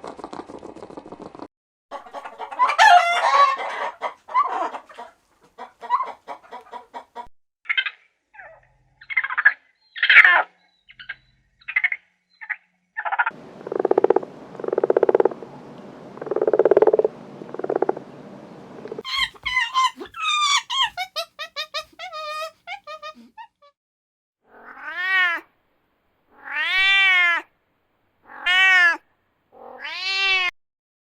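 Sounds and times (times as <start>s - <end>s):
hen clucking: 1.9s - 7.3s, 19.0s - 23.6s
low buzzy frog croaks: 13.6s - 15.5s, 16.2s - 18.1s.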